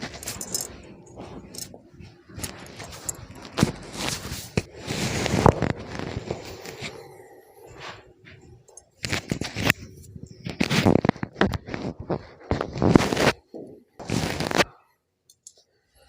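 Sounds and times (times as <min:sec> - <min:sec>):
clothing rustling: 0:00.0 - 0:14.7
spine cracking and popping: 0:07.8 - 0:14.7.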